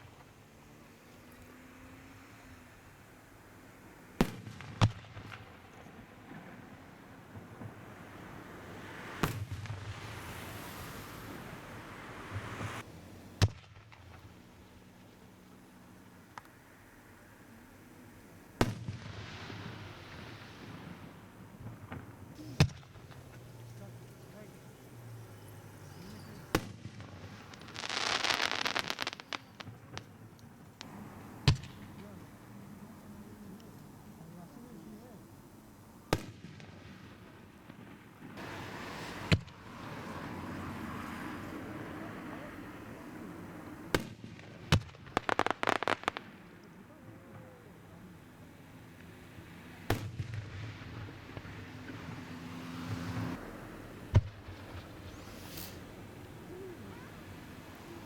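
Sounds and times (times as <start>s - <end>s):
fireworks crackling pops: 4.1s - 15.2s, 15.8s - 17.0s, 18.6s - 34.9s, 36.0s - 48.0s, 48.8s - 58.0s
fireworks bangs: 4.2s - 12.8s, 18.6s - 33.0s, 36.1s - 48.0s, 48.9s - 53.5s, 54.1s - 58.0s.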